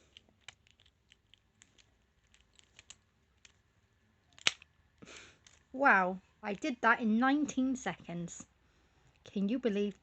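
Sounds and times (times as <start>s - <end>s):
lock picks clicking and scraping: 0.0s - 3.7s.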